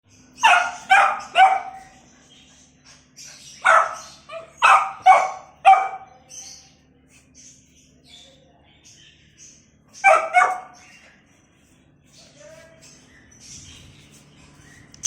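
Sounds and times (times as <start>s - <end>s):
puppy barking: 0.4s - 2.0s, 3.6s - 6.3s, 9.9s - 10.9s.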